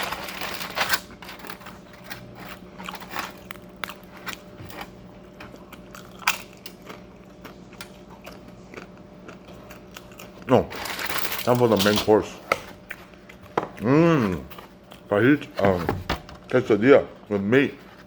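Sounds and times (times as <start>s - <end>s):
faint steady hum: 0.0s - 18.0s
chewing with crunches: 1.0s - 11.6s, 12.8s - 15.1s.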